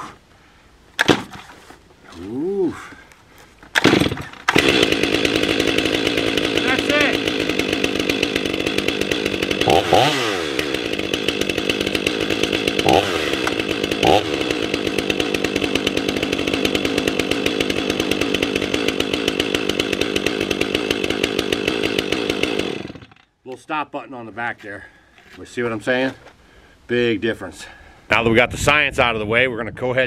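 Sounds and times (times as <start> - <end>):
chainsaw idling: 3.8 - 23.3
chainsaw throttle blips: 3.8 - 23.3.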